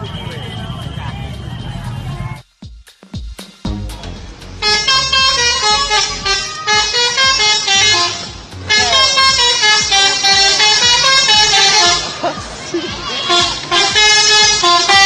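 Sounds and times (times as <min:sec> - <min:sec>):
bus horn playing a melody: 0:04.6 - 0:12.4, 0:13.0 - 0:15.0.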